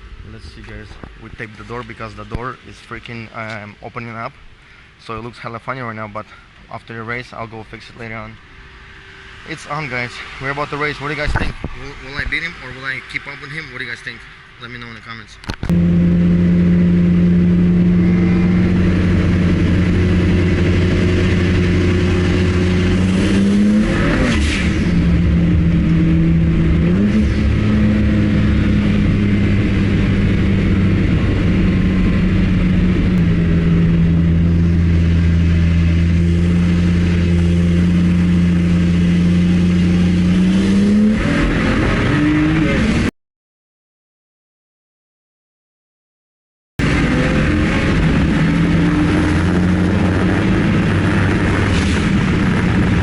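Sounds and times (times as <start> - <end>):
car engine running loudly: 15.4 - 43.1, 46.8 - 53.0.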